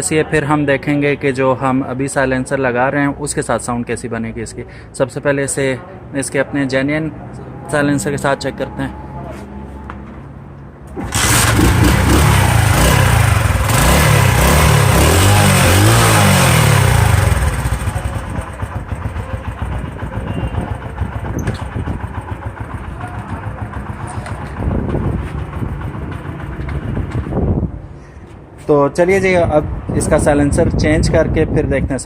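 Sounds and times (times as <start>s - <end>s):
motorcycle engine revving and idling: 11.0s - 27.5s.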